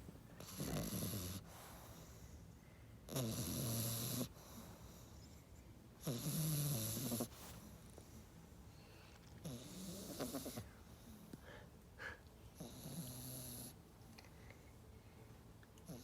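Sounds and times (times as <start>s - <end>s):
pet snoring: 0.4s - 2.2s, 3.1s - 4.6s, 6.0s - 7.4s, 9.4s - 10.7s, 12.6s - 13.8s.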